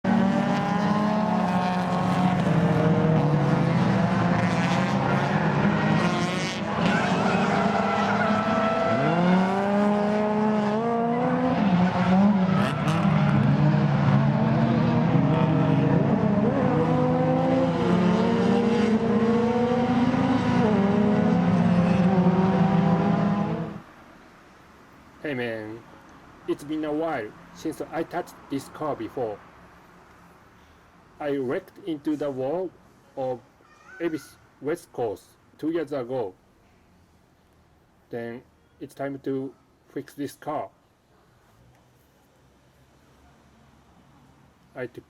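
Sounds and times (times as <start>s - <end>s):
car engine revving hard: 0.0s - 23.8s.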